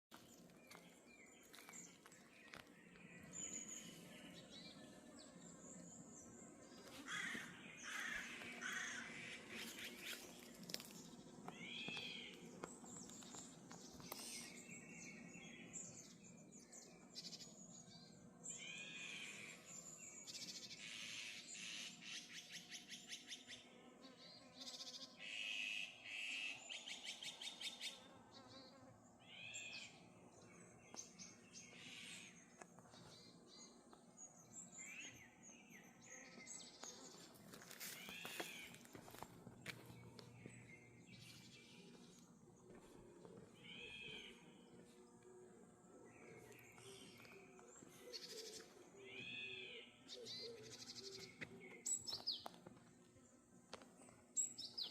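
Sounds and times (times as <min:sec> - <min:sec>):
wild birds chirping: 0:00.1 - 0:54.9.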